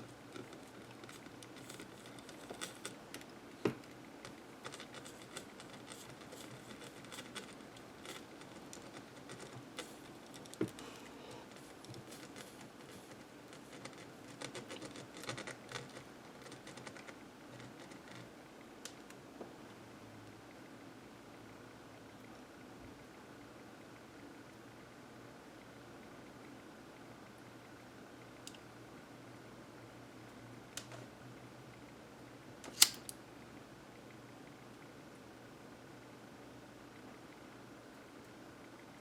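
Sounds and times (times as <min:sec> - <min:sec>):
tools clicking and scratching: 0:04.2 - 0:10.8, 0:32.7 - 0:33.1.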